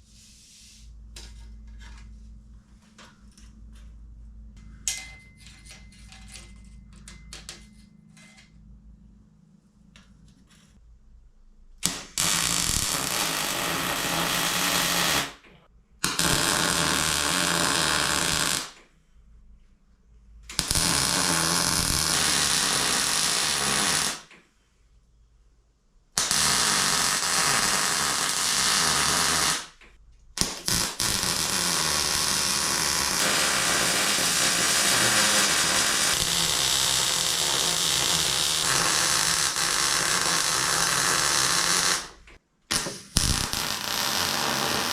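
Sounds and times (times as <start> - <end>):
welder arc crackling hiss: 11.8 - 15.4, 16.0 - 18.8, 20.5 - 24.3, 26.2 - 29.8, 30.4 - 44.9.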